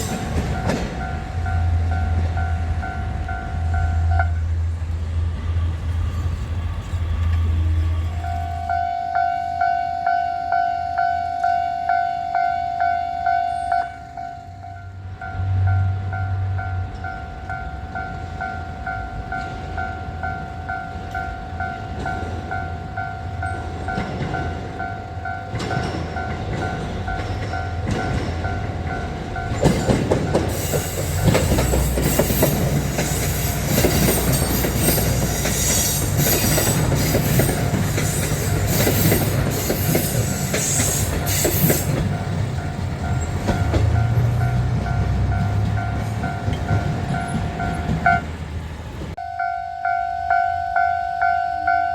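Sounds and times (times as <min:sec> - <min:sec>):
train wheels clattering: 0:00.0 - 0:03.5, 0:19.1 - 0:48.4
diesel train passing: 0:00.0 - 0:51.9.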